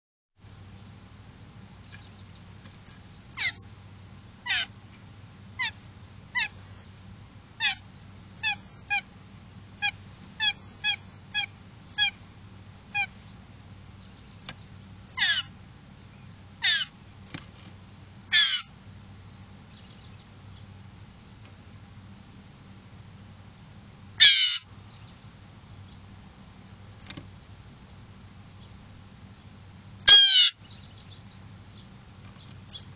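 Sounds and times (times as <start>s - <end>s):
blue jay calling: 1.8s - 2.5s, 3.3s - 3.7s, 4.4s - 4.8s, 5.5s - 6.7s, 7.6s - 9.1s, 9.8s - 12.2s, 12.9s - 15.6s, 16.2s - 17.0s, 18.3s - 18.8s, 19.7s - 20.7s, 24.2s - 26.0s, 30.0s - 32.9s.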